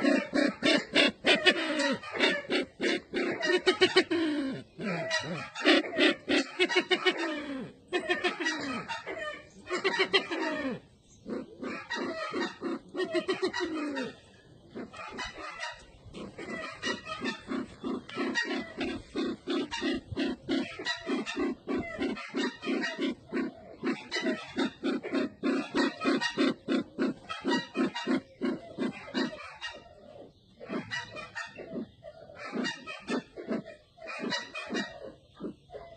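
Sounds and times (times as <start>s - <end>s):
bird repeating low call notes: 9.5s - 29.2s.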